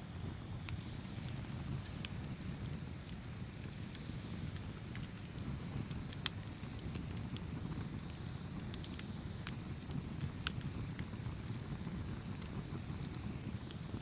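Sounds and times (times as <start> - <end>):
fire crackling and popping: 0.0 - 14.0
wood fire rumbling: 0.0 - 14.0.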